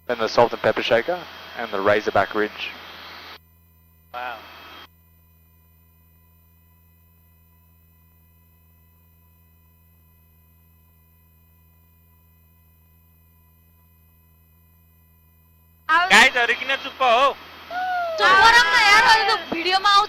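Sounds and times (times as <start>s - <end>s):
faint electrical hum: 0.1s - 3.4s, 15.9s - 20.0s.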